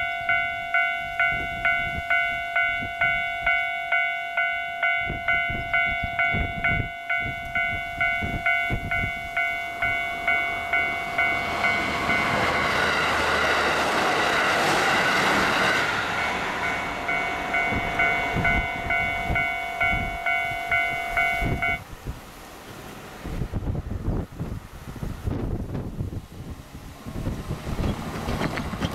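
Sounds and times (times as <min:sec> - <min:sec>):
level-crossing alarm dinging: 0:00.0 - 0:21.8
train rushing past: 0:00.0 - 0:28.9.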